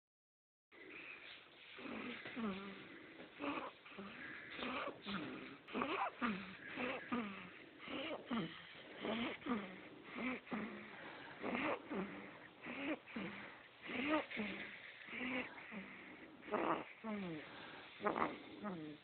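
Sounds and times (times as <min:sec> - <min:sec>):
baby snoring: 0:01.8 - 0:19.0.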